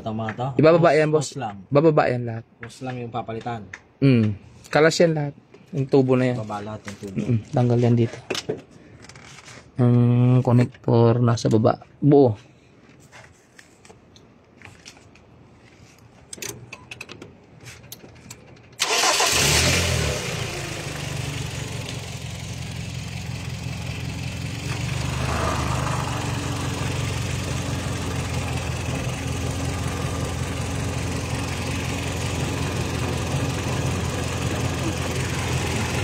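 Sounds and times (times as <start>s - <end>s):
car engine starting and idling: 18.4s - 36.0s.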